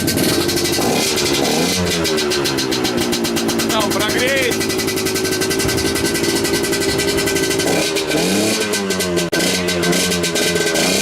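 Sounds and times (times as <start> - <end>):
motorcycle engine idling and revving: 0.0 - 11.0.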